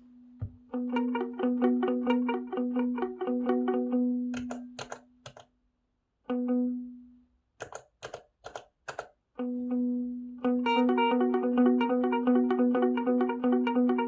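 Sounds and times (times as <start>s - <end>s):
electric guitar with delay: 0.7s - 4.3s, 9.4s - 14.0s.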